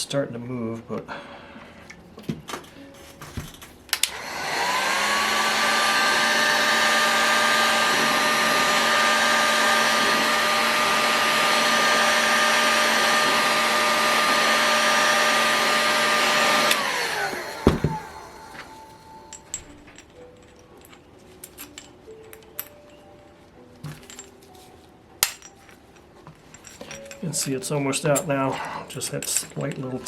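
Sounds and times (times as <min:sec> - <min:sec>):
hot-air gun blowing and whining: 0:04.0 - 0:19.6.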